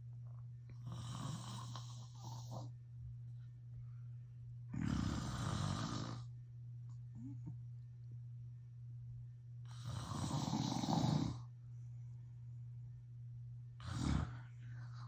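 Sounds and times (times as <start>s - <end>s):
steady low hum: 0.0s - 15.0s
man snoring: 0.8s - 2.7s, 4.7s - 6.3s, 9.7s - 11.5s, 13.8s - 14.5s.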